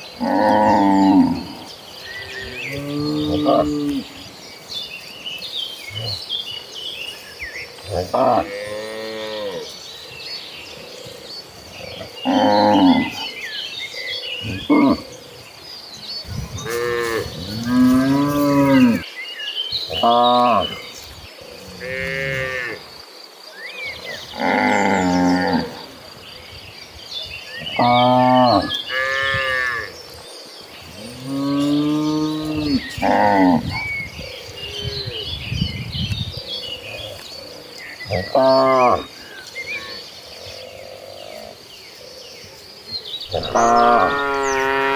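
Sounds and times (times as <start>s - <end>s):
birds chirping: 0.0s - 44.9s
cows mooing: 0.2s - 4.1s, 7.8s - 9.8s, 11.9s - 13.3s, 16.4s - 19.0s, 31.0s - 33.8s, 38.1s - 39.1s, 43.3s - 44.9s
cattle mooing: 16.6s - 19.0s, 43.3s - 44.9s.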